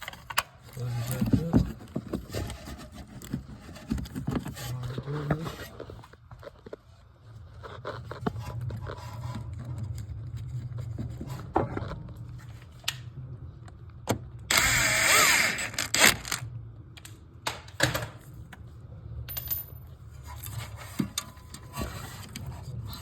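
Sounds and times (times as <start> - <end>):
power tool whine: 14.5 - 16.4.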